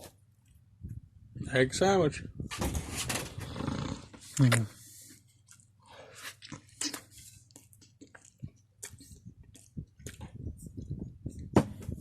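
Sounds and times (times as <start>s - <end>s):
person chewing food: 5.4s - 10.9s.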